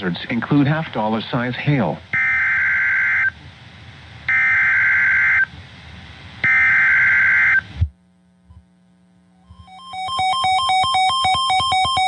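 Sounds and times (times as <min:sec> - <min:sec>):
faint low hum: 0:00.0 - 0:12.0
buzzing two-tone data bursts: 0:09.4 - 0:12.0.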